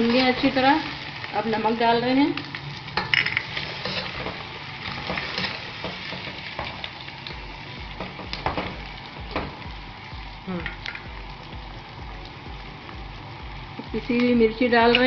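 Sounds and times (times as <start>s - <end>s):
chicken sizzling in hot oil: 0.0s - 15.0s
spoon scraping a pan: 3.0s - 6.8s
low pulsing hum: 7.3s - 15.0s.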